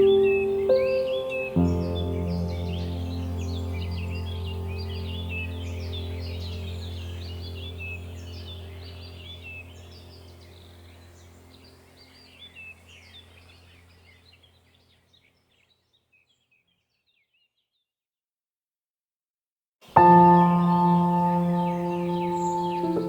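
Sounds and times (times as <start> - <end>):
birds chirping and calling: 0.0 - 17.5, 20.2 - 23.0
low steady hum: 2.0 - 14.7.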